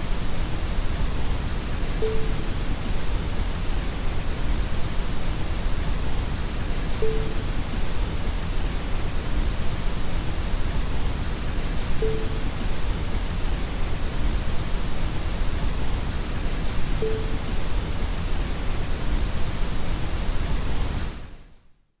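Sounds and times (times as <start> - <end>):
low static hiss: 0.0 - 22.0
short low beep: 2.0 - 2.6, 7.0 - 7.4, 12.0 - 12.5, 17.0 - 17.5.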